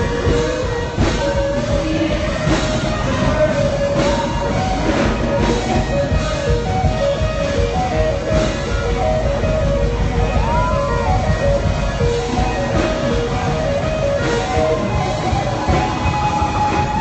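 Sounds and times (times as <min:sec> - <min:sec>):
drum kit: 0:00.0 - 0:17.0
electric guitar: 0:00.0 - 0:17.0
held keyboard notes: 0:00.0 - 0:17.0.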